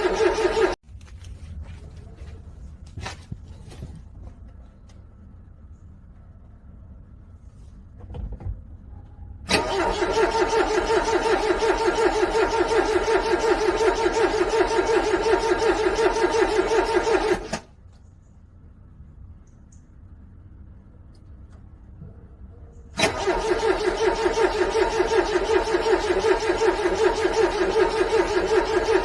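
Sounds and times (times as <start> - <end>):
car engine cranking: 0.0 - 0.8, 9.5 - 17.7, 23.0 - 29.0.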